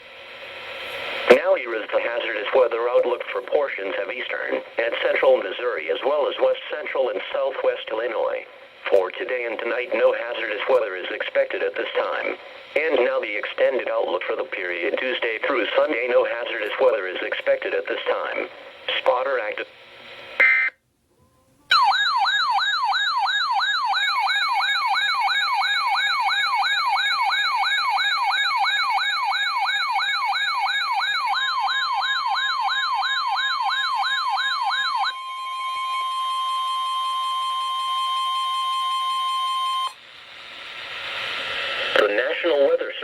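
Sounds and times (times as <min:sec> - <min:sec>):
steady warning alarm tone: 0:00.0 - 0:20.7, 0:21.7 - 0:42.0
warbling electronic siren: 0:21.7 - 0:40.0.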